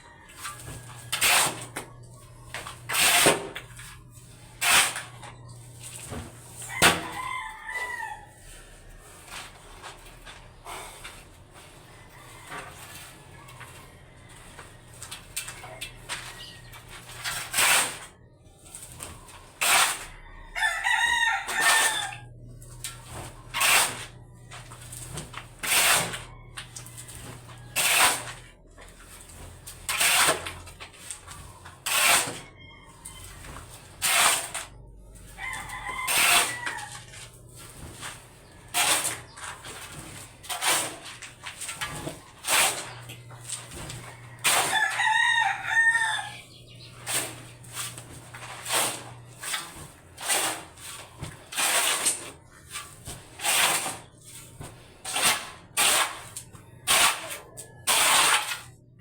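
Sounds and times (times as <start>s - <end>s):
rooster crowing: 6.6s - 8.4s, 20.1s - 22.3s, 35.3s - 37.2s, 43.9s - 46.5s.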